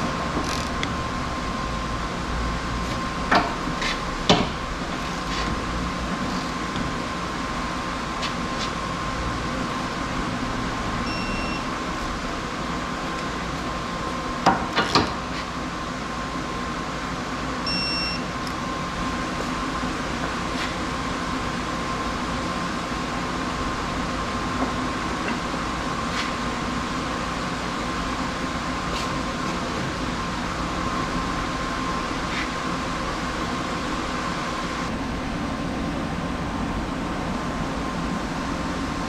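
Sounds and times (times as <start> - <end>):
workshop hum: 0.0 - 39.0.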